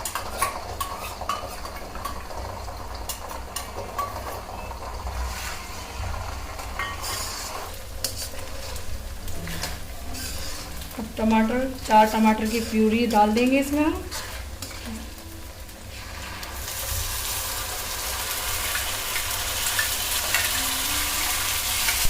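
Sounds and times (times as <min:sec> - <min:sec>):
spoon stirring and scraping: 0:00.0 - 0:02.4, 0:05.2 - 0:11.0, 0:12.0 - 0:15.2
food sizzling in oil: 0:00.0 - 0:22.0.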